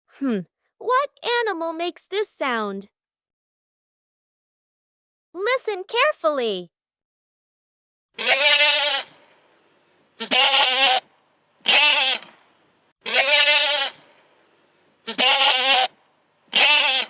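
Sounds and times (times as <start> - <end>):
goat bleating: 8.2 - 9.2, 10.2 - 11.0, 11.6 - 12.3, 13.0 - 14.0, 15.1 - 17.0.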